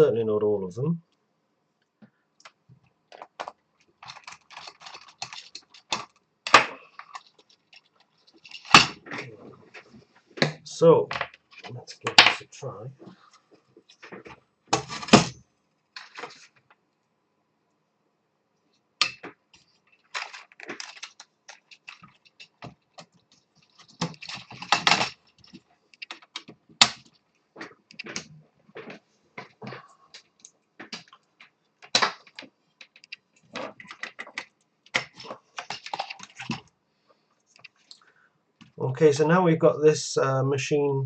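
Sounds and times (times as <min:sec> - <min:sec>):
plastic parts clicking and rattling: 0:02.4 - 0:13.2, 0:13.8 - 0:16.8, 0:19.0 - 0:36.8.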